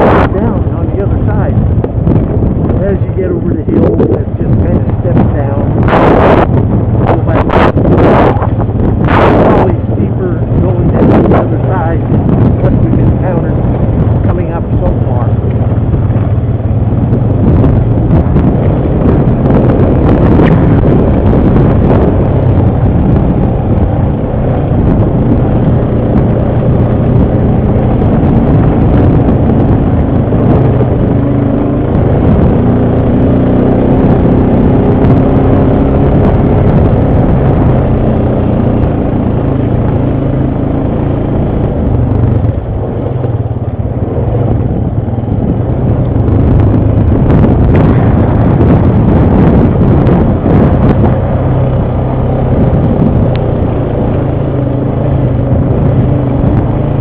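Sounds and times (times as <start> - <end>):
atv engine running: 0.0 - 57.0
wind buffeting microphone: 0.0 - 57.0.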